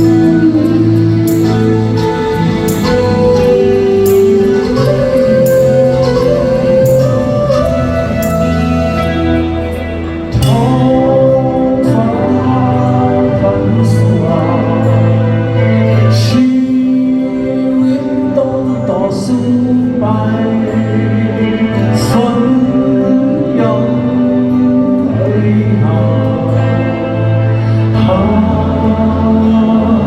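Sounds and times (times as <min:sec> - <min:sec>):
rock band playing live: 0:00.0 - 0:30.0.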